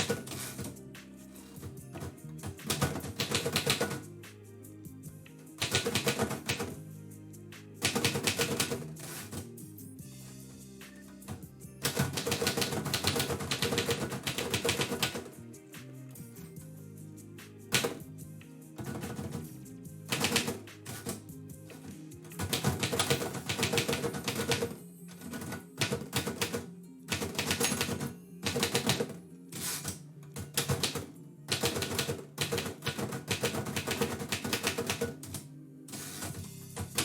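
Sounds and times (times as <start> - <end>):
quiet background music: 0.0 - 37.0
typewriter keys clacking: 2.0 - 4.0, 5.6 - 6.7, 7.8 - 9.4, 11.8 - 15.3, 20.1 - 21.2, 22.4 - 24.8, 25.4 - 35.4.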